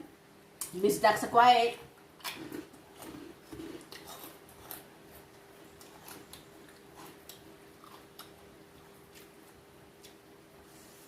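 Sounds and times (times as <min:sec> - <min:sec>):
faint steady hum: 0:00.0 - 0:11.0
chewing crispy food: 0:02.2 - 0:10.4.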